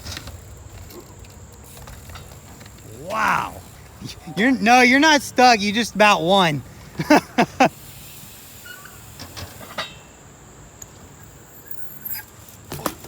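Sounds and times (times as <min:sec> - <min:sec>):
bike clicks and knocks: 0:00.0 - 0:03.0, 0:08.8 - 0:10.1, 0:12.3 - 0:13.0
low steady hiss: 0:00.0 - 0:13.0.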